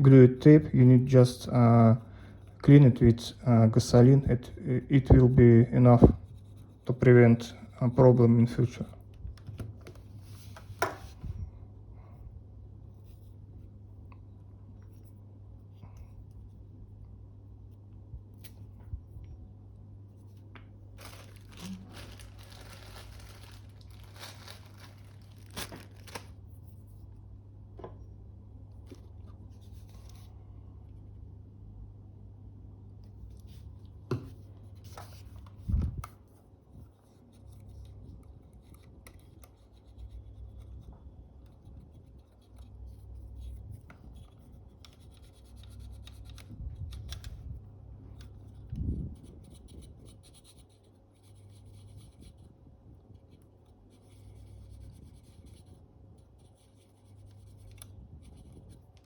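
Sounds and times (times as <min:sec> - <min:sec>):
steady low hum: 0:00.0 - 0:59.0
soft rubbing and scratching: 0:02.8 - 0:11.6, 0:12.8 - 0:27.2, 0:28.8 - 0:30.4, 0:33.1 - 0:59.0.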